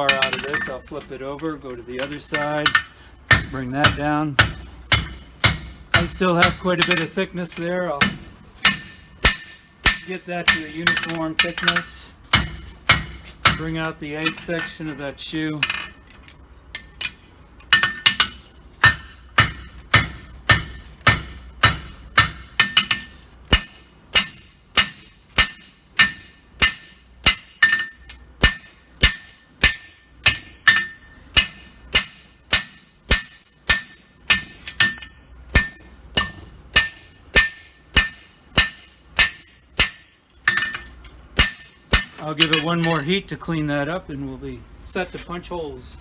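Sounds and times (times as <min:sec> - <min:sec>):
hammer striking steel on anvil: 0:00.0 - 0:16.2, 0:16.8 - 0:43.1.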